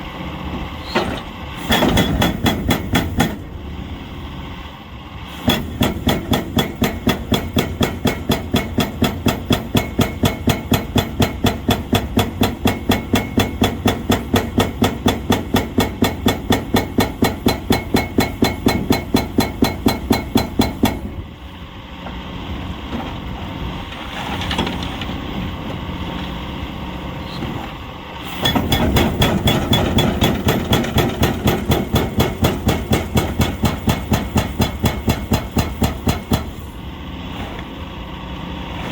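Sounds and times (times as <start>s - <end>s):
excavator engine running: 0.0s - 38.9s
hydraulic breaker hammering: 1.6s - 3.5s, 5.4s - 21.2s, 28.3s - 36.6s.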